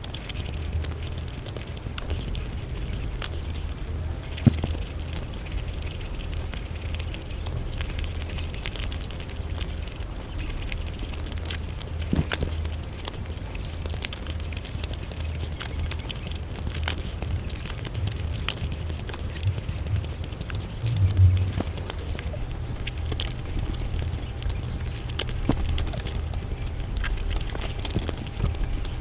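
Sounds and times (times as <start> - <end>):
sped-up chewing clicks: 0.0 - 29.0
steady low hum: 0.0 - 29.0.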